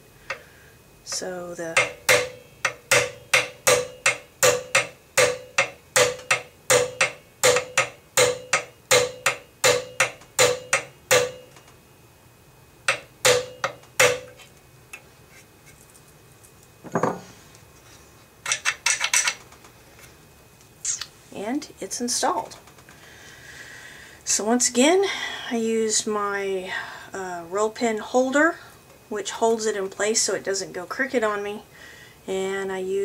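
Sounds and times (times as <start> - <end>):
hammer tapping metal punch: 1.1 - 11.7, 12.8 - 14.5.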